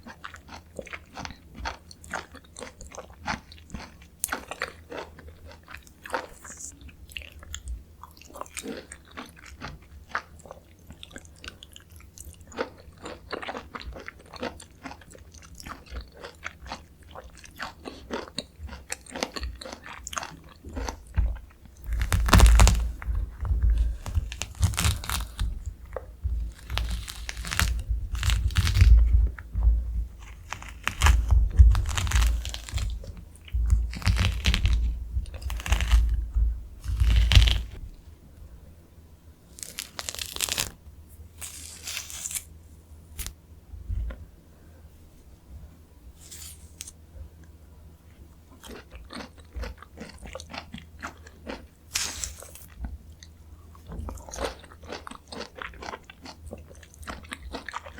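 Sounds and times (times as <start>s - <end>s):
chewing mouth sounds: 0.0s - 29.4s, 48.5s - 57.9s.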